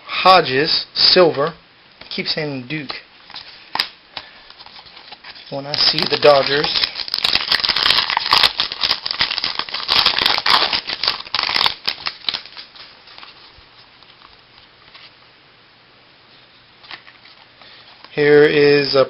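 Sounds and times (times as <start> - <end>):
cards and wrapper crinkling: 3.2 - 15.2, 16.8 - 18.2.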